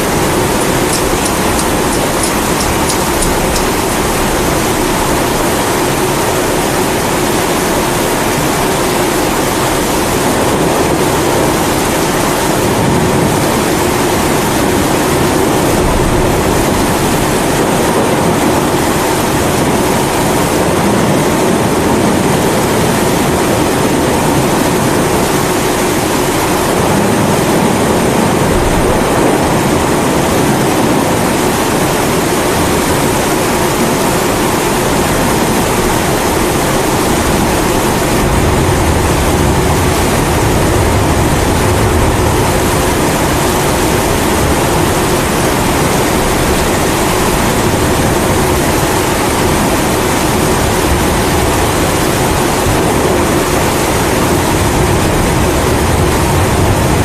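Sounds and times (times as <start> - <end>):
stove burner roaring: 0.0 - 7.2
steady rainfall: 0.0 - 57.0.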